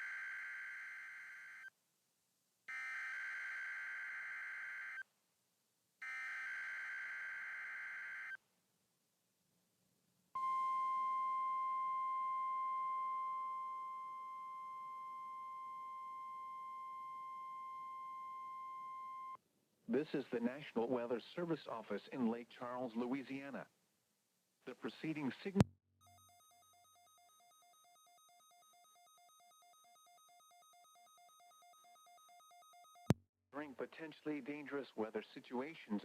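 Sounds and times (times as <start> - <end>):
steady warning alarm tone: 26.0 - 33.1.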